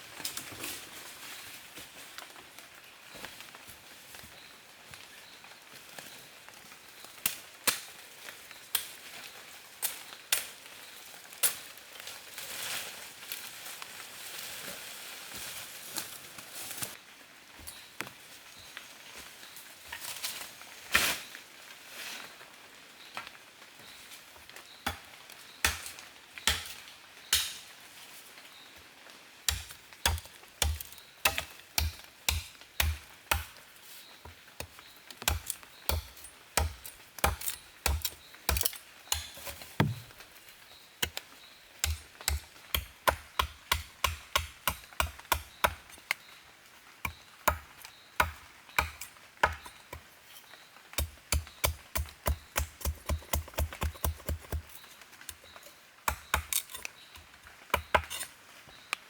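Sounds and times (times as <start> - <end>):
blade chopping wood: 29.5 - 33.6, 35.2 - 40.1, 41.8 - 45.9, 51.0 - 54.8, 56.1 - 56.9.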